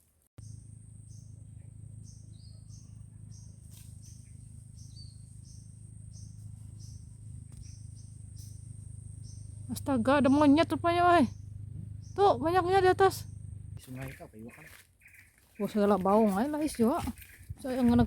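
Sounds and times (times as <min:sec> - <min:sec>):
high-pitched insect drone: 0:00.4 - 0:14.1
low hum: 0:00.4 - 0:14.2
bird chirping: 0:00.4 - 0:18.0.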